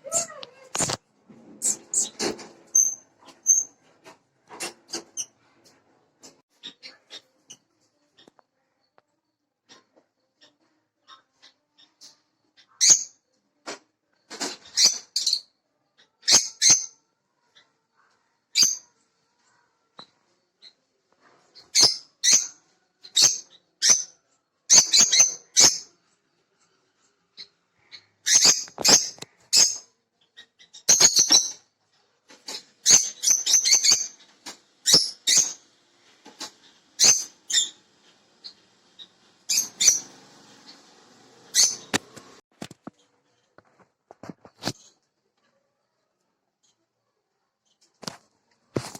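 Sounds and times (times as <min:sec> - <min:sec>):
small birds chirping: 0:06.2 - 0:43.8.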